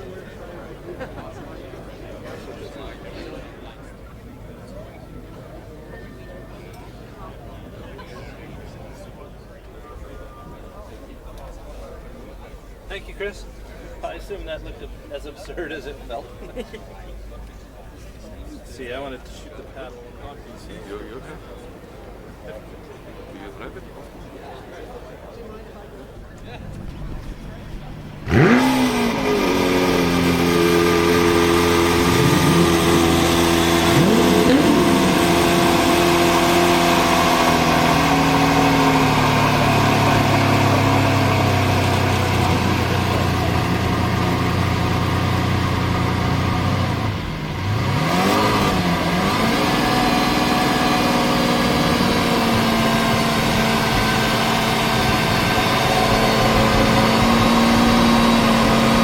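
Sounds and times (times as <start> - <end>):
car engine running: 26.7 - 59.0.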